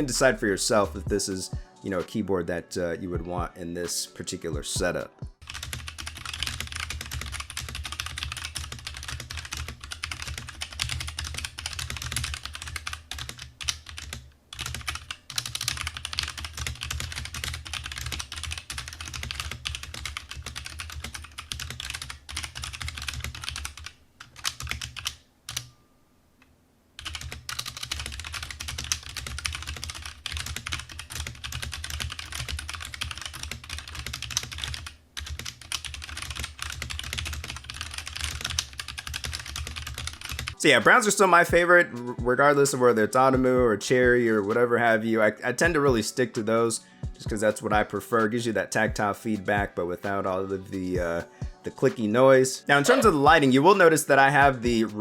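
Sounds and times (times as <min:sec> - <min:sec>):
mechanical keyboard typing: 0:05.4 - 0:25.7, 0:27.0 - 0:40.6.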